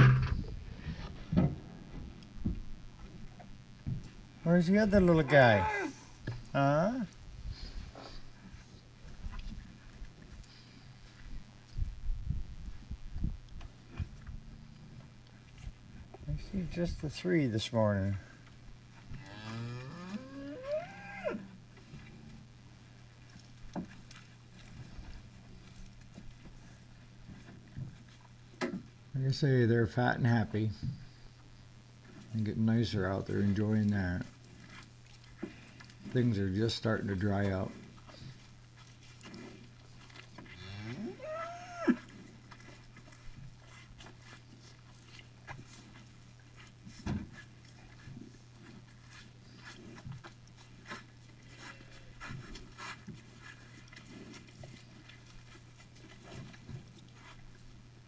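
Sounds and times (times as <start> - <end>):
cow mooing: 5.0 - 6.2, 19.1 - 21.5, 40.6 - 42.1.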